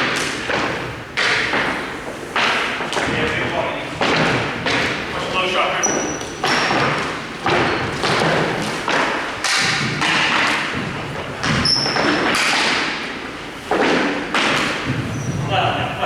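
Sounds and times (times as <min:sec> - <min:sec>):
heavy thuds against rink boards: 0:06.4 - 0:13.1, 0:13.7 - 0:15.6.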